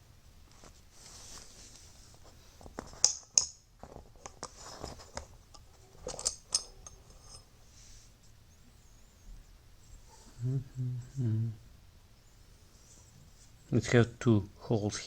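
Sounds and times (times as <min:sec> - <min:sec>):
light rubbing: 0:04.2 - 0:10.4.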